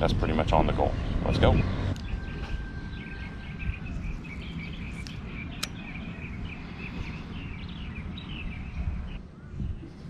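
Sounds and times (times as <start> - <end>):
birds chirping: 0.0 - 10.0
wind rumble on microphone: 0.0 - 10.0
sharp click: 5.0 - 5.8.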